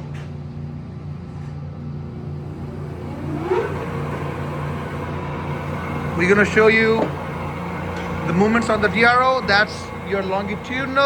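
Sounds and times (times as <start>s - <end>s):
rising tone: 2.0s - 9.2s
lathe humming: 2.0s - 11.0s.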